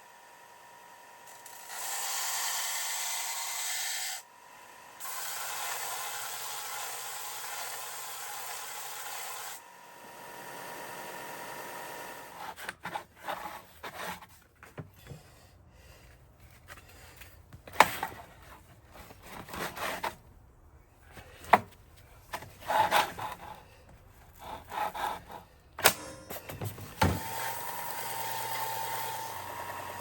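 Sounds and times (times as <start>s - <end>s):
scraping and rubbing: 12.4s - 15.4s, 16.0s - 25.8s.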